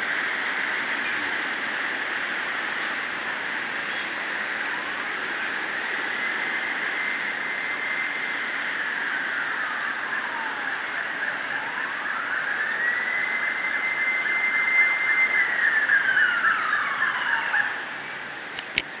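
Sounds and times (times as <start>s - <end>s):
fire truck siren wailing: 0.2s - 18.5s
fast warbling siren tone: 7.6s - 18.0s.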